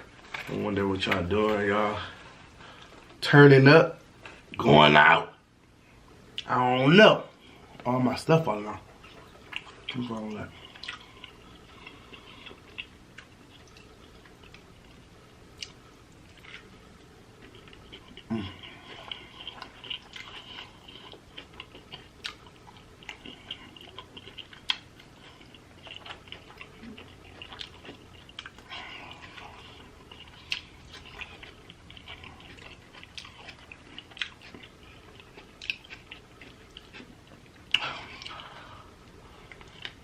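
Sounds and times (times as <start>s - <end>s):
chewing and biting food: 8.8s - 40.0s.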